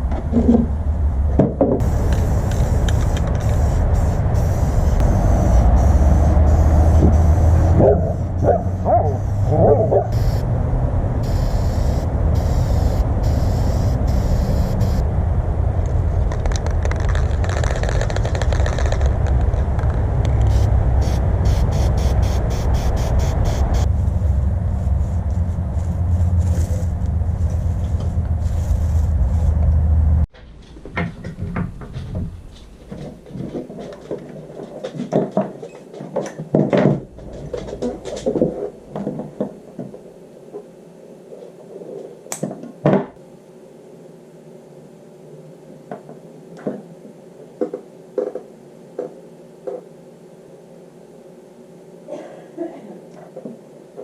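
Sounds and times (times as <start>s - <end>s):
loud low rumble: 0.6s - 30.3s
objects knocking and clattering: 30.3s - 39.9s.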